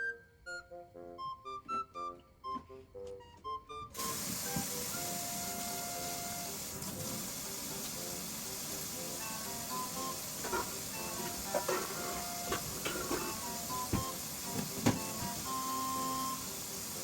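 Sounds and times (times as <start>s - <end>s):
light background music: 0.0s - 17.0s
steady loud hiss: 4.0s - 17.0s.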